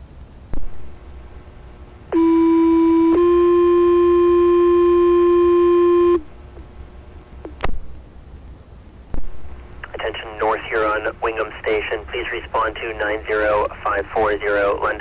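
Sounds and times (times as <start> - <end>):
radio click: 9.8 - 13.3.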